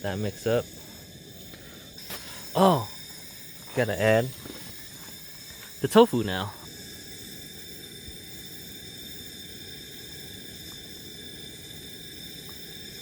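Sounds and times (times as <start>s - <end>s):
gas stove burner hissing: 0.0s - 13.0s.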